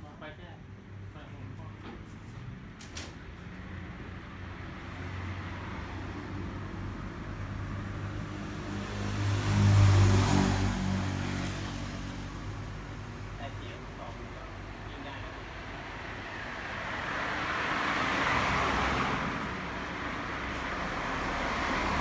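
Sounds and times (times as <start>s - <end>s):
vehicle engine passing by: 3.9s - 13.4s, 16.0s - 22.0s.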